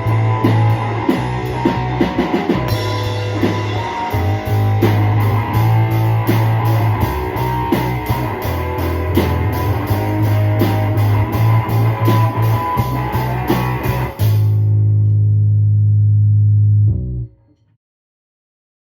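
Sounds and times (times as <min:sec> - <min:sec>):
drums playing steady beat: 0:00.0 - 0:14.6
guitar strumming: 0:00.0 - 0:15.1
bass line: 0:00.0 - 0:17.4.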